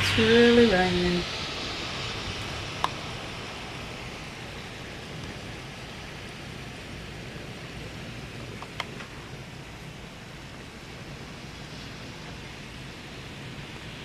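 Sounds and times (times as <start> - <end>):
heavy rain falling: 0.0 - 14.0.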